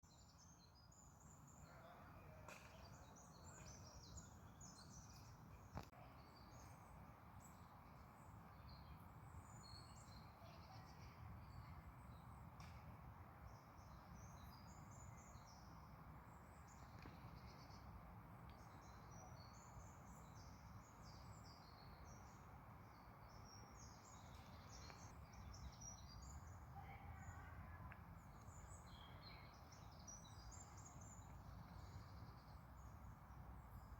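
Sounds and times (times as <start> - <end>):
small birds chirping: 0.1 - 12.8, 13.4 - 33.9.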